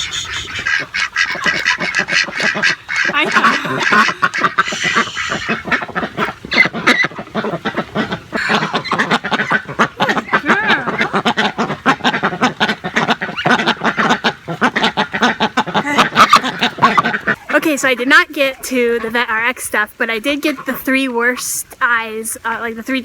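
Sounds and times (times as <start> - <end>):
ducks quacking: 0.0 - 23.0.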